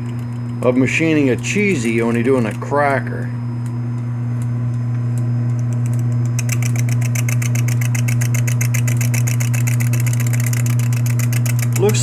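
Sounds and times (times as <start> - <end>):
lathe motor humming: 0.0 - 12.0
cutting tool ticking on cracker: 5.6 - 12.0.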